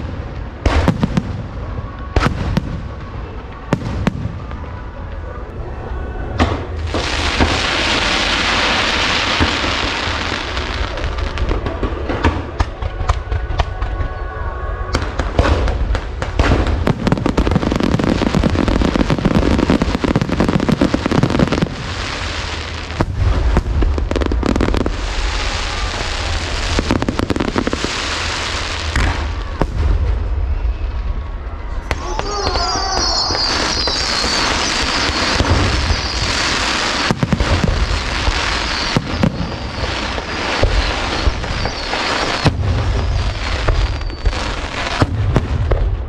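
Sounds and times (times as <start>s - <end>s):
fireworks bangs and crackles: 0.0s - 46.0s.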